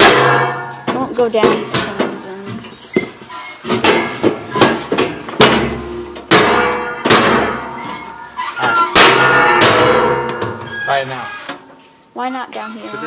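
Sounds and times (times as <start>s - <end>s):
package banging in mail slot: 3.6s - 10.7s.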